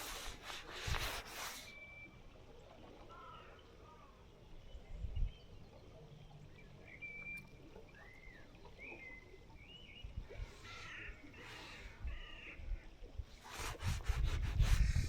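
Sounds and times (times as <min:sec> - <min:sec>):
faint birdsong: 0:03.1 - 0:12.9.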